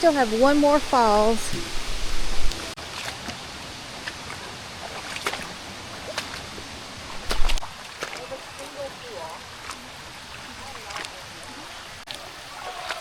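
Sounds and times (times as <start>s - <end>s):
waterfall and creek rushing: 0.0s - 13.0s.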